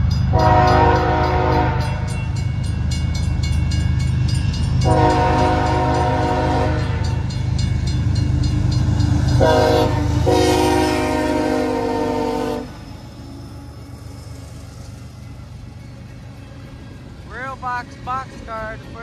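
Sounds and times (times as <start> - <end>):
locomotive air horn blasts: 0.3 - 2.1, 4.8 - 7.2, 9.4 - 12.8.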